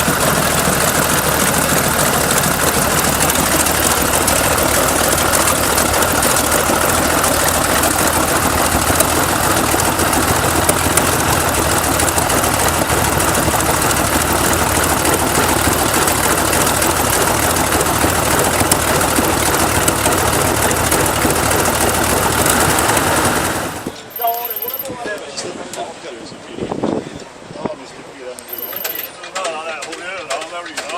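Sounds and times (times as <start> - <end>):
large engine clattering: 0.0 - 24.8.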